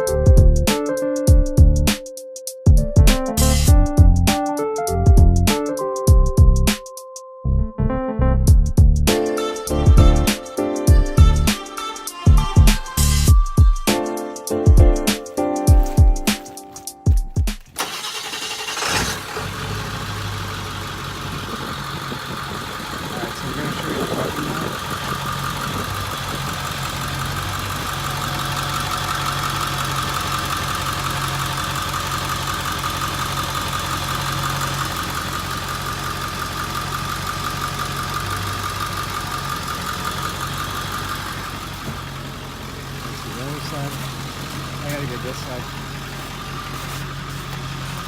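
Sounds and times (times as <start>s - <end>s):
diesel engine idling: 17.8s - 48.0s.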